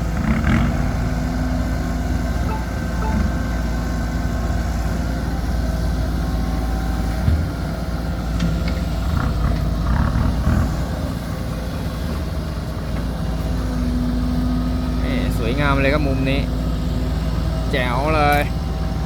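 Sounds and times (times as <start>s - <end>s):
heavy diesel engine running: 0.0s - 19.0s.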